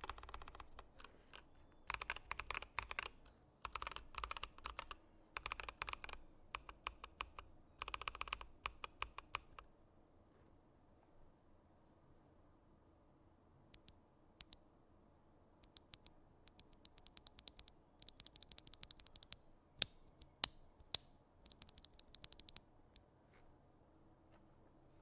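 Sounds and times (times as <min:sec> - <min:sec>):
typing on mechanical keyboard: 0:00.0 - 0:09.6, 0:13.8 - 0:14.6, 0:15.6 - 0:22.6.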